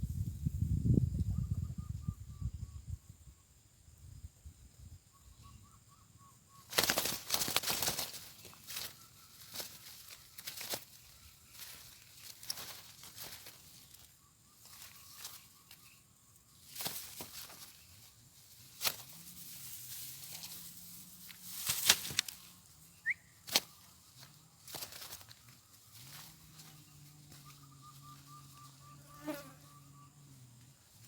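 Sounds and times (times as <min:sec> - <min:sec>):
dove wings flapping: 0:06.7 - 0:14.0, 0:16.7 - 0:17.9, 0:21.5 - 0:22.4, 0:23.4 - 0:23.8, 0:24.6 - 0:26.7.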